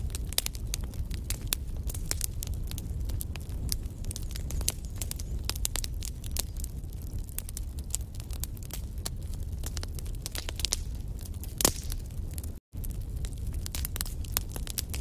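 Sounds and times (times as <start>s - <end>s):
wood fire crackling and popping: 0.0s - 15.0s.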